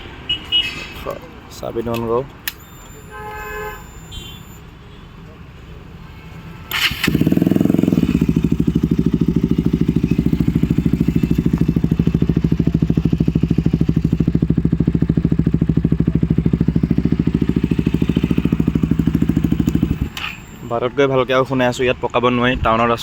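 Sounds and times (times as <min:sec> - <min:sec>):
motorcycle idling: 0:02.4 - 0:04.6, 0:06.7 - 0:21.3.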